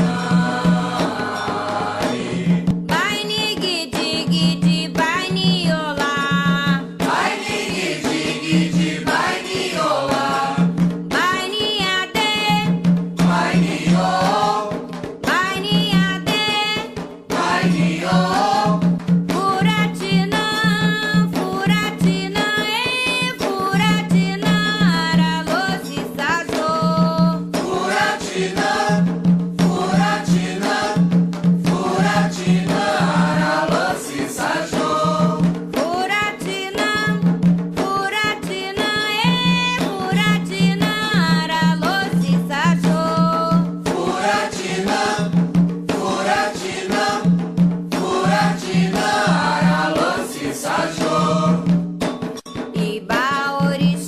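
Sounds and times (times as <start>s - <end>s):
voices singing in chorus: 0.0s - 3.1s, 6.0s - 11.5s, 13.2s - 16.4s, 17.3s - 20.8s, 23.6s - 35.6s, 39.8s - 51.8s
steady drumming: 0.0s - 54.0s.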